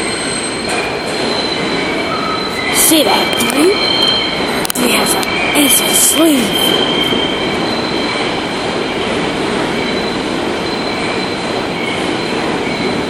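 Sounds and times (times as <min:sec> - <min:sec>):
train wheels on rail: 0:00.0 - 0:13.0
wheel squeal: 0:06.0 - 0:08.4.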